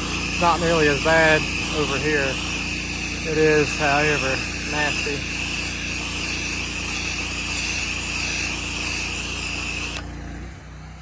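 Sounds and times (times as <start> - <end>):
pressure washer spray hissing: 0.0 - 10.3
pressure washer engine drone: 0.0 - 11.0.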